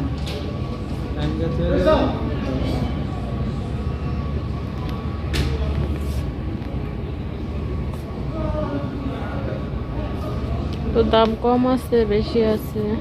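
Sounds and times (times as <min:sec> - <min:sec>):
faint distant voices: 0:00.0 - 0:13.0.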